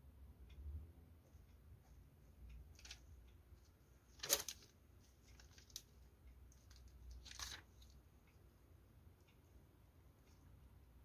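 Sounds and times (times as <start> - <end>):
packaging clicks and rustles: 4.2 - 4.7.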